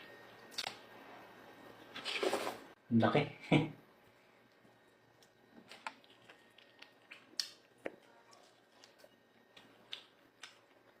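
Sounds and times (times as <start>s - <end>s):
person chewing food: 4.5s - 11.0s.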